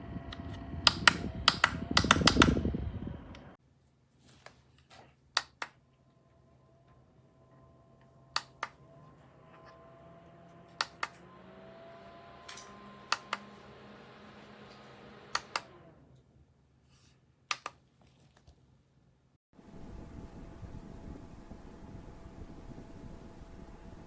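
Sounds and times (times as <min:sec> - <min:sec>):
small desk fan motor whirring: 0:00.0 - 0:03.6, 0:06.3 - 0:16.2, 0:19.6 - 0:24.0
push button clicks: 0:08.4 - 0:08.8, 0:10.8 - 0:11.2, 0:15.3 - 0:15.7.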